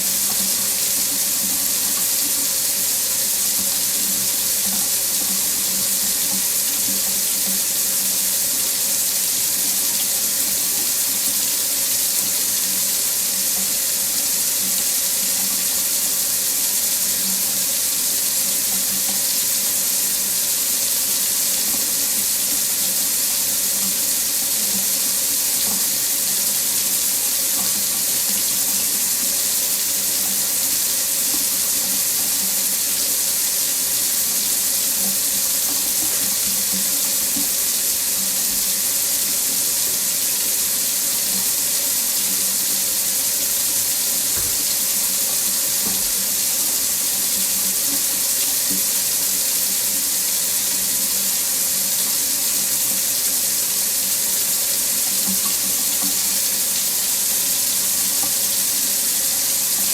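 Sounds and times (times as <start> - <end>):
water running from faucet into sink: 0.0 - 59.9.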